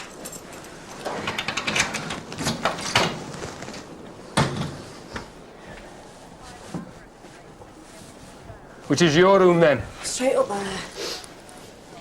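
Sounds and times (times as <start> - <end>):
lock rattling clicks: 0.0 - 3.2.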